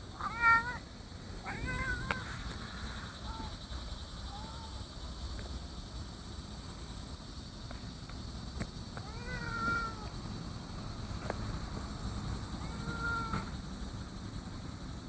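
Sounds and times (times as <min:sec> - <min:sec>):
steady background hiss: 0:00.0 - 0:15.0
cat meowing: 0:00.1 - 0:00.8, 0:01.4 - 0:02.5, 0:04.3 - 0:04.8, 0:09.0 - 0:10.1, 0:12.6 - 0:13.5.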